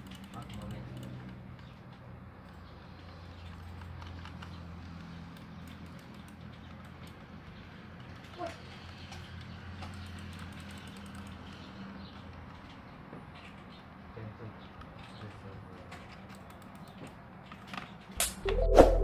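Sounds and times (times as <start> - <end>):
computer mouse clicks: 0.0 - 1.7, 5.3 - 7.2, 9.8 - 11.6, 16.3 - 18.6.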